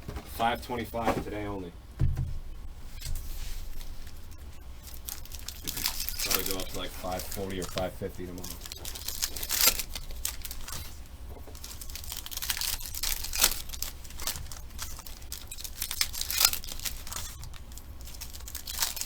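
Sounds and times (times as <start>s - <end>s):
foil wrappers crinkling and tearing: 2.8s - 19.0s.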